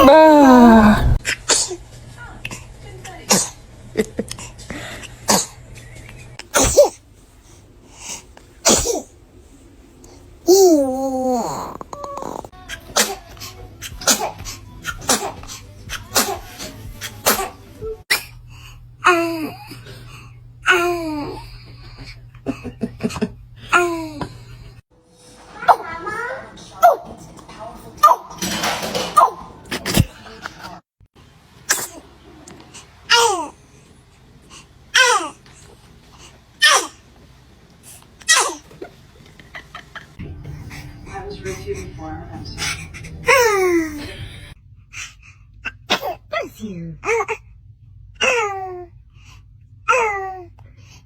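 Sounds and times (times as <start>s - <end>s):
short falling vocal sound: 0.0s - 1.2s
baby sneezing: 3.3s - 3.6s, 5.3s - 5.6s, 6.5s - 7.0s, 8.6s - 9.1s, 10.5s - 18.4s, 31.7s - 32.0s, 36.6s - 37.0s, 38.3s - 38.6s, 45.7s - 46.2s.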